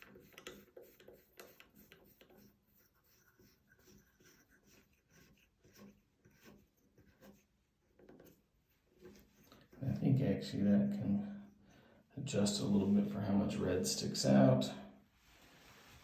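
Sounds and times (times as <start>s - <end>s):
part threaded by hand rubbing: 0.0s - 9.9s.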